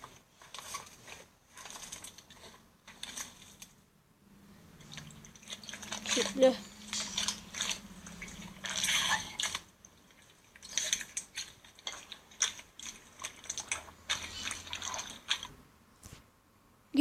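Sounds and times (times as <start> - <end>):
slime squishing and crackling: 4.8 - 15.6.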